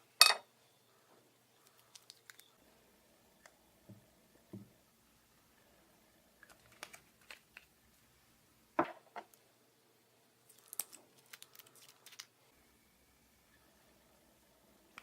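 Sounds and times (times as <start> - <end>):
slime clicks and crackles: 1.7 - 2.5.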